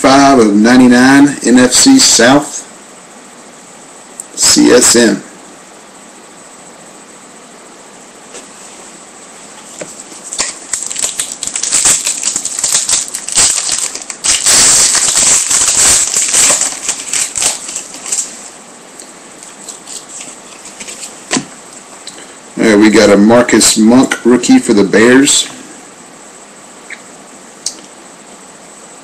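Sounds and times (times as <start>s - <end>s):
foil wrapper tearing and crinkling: 10.1s - 18.4s, 19.4s - 21.4s.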